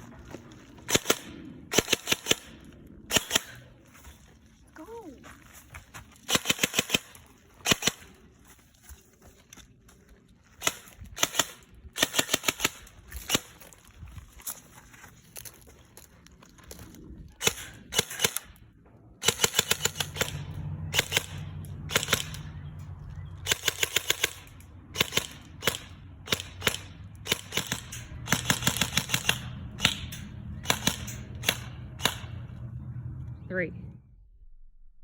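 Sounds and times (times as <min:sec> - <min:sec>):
airsoft gun firing bursts: 0:00.9 - 0:03.7, 0:06.3 - 0:08.2, 0:10.6 - 0:13.6, 0:17.4 - 0:18.5, 0:19.2 - 0:22.6, 0:23.4 - 0:32.4.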